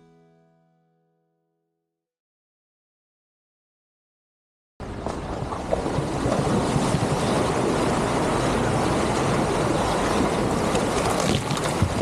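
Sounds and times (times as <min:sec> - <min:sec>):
engine and tyre rumble: 0:04.8 - 0:12.0
wind noise: 0:04.8 - 0:12.0.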